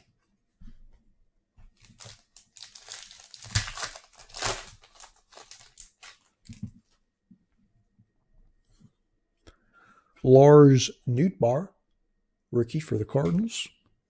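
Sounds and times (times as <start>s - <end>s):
foil wrapper crinkling and tearing: 1.8s - 6.6s.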